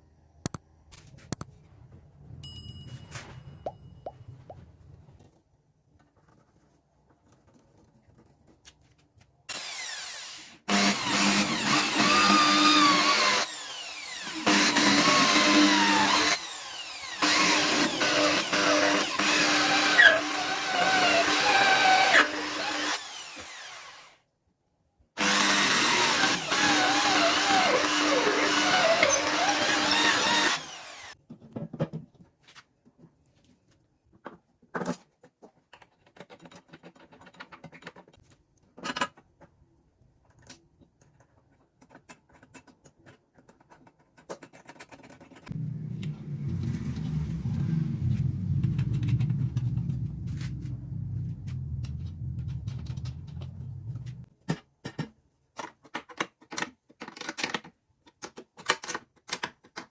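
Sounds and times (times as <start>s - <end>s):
tools clicking and knocking: 34.1s - 39.6s, 40.2s - 45.6s, 54.4s - 59.9s
machine running: 45.5s - 54.2s
low rumble: 45.5s - 54.3s.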